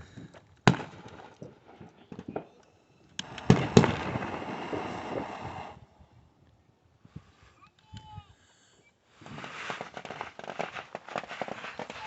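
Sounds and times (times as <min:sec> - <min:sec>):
fireworks bangs: 0:00.6 - 0:02.6, 0:03.2 - 0:05.9, 0:09.2 - 0:12.0
fireworks hissing: 0:03.2 - 0:06.0, 0:09.1 - 0:12.0.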